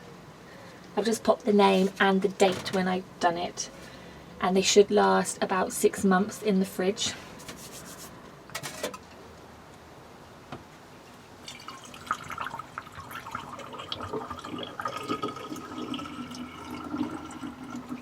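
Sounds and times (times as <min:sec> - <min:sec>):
liquid pouring into glass bottle: 0:11.4 - 0:18.0.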